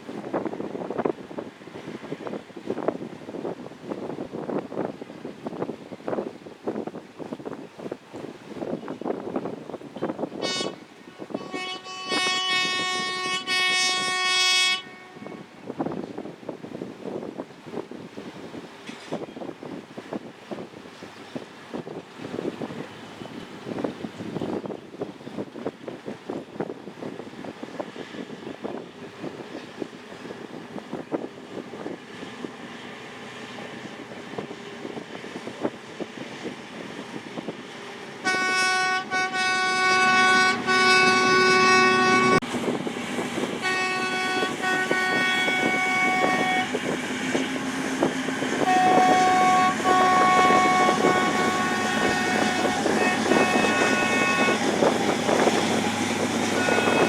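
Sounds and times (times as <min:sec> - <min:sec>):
wind noise: 0:00.0 - 0:57.0
horn blasts: 0:10.4 - 0:15.7, 0:38.2 - 0:42.5, 0:43.4 - 0:57.0
engine rumble: 0:39.8 - 0:57.0.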